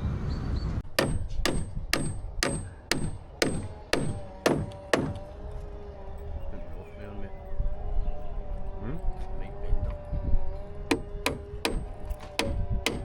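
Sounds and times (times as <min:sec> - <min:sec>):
hammer driving nails into wood: 0:00.9 - 0:05.3, 0:10.9 - 0:13.0.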